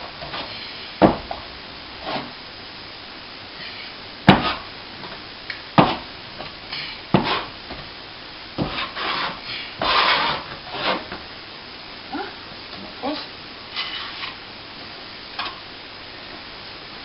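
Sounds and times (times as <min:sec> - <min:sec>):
trowel knocking and scraping wall: 0:04.3 - 0:05.2, 0:05.8 - 0:06.5, 0:07.1 - 0:07.9, 0:08.6 - 0:11.2.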